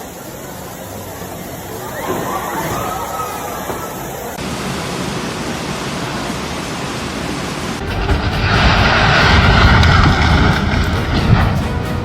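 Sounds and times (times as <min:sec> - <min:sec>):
rushing floodwater: 0:00.0 - 0:12.0
low rumble: 0:07.8 - 0:12.0.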